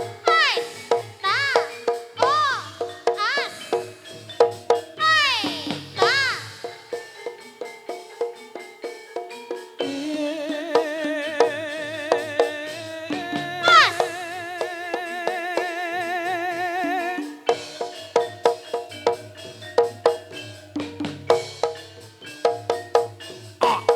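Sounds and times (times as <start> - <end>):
pitched percussion and drums: 0.0 - 23.9
swooping calls: 0.0 - 23.9.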